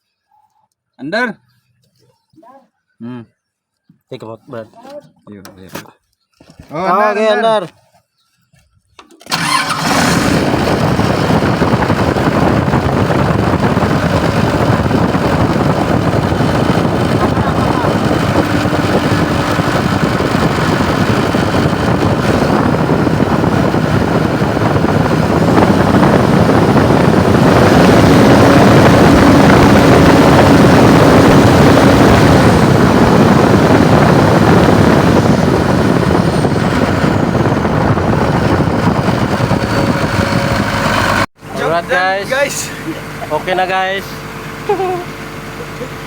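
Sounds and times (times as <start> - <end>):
diesel engine running: 9.3 - 46.0.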